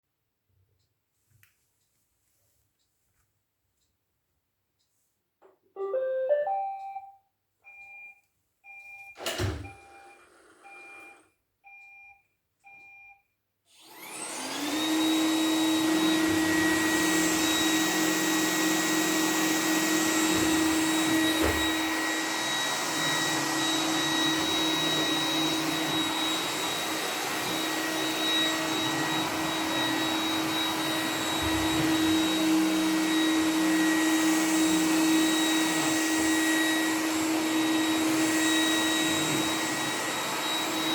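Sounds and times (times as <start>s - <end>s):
robot vacuum tune: 5.8s - 7.2s, 13.8s - 40.9s
short beeps: 5.8s - 7.2s
vacuum motor high whine: 13.8s - 40.9s.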